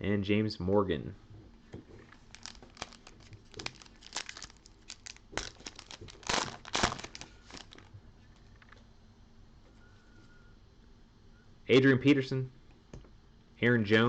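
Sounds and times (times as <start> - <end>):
card pack wrapper crinkling: 2.1 - 7.9.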